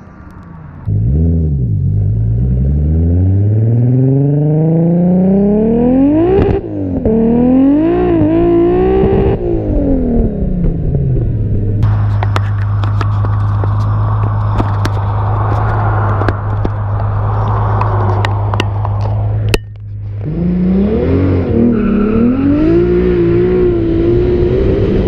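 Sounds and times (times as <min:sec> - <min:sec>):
car engine revving: 0:00.0 - 0:25.0
exhaust pops and crackles: 0:06.2 - 0:07.2, 0:08.1 - 0:20.3.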